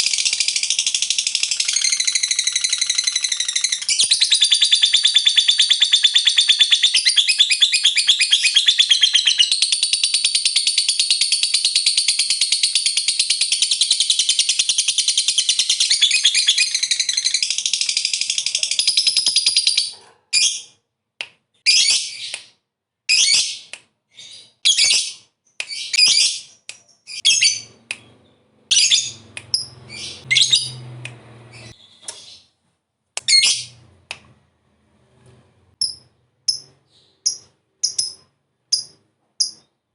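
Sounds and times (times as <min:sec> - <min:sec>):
lovebird shrill chattering trill: 0:00.0 - 0:12.9
lovebird shrill chirps: 0:00.0 - 0:20.7, 0:23.1 - 0:30.8, 0:33.3 - 0:33.7, 0:35.8 - 0:39.6.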